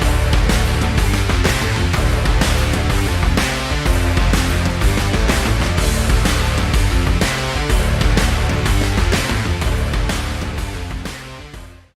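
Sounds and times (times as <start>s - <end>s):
rock background music: 0.0s - 11.9s.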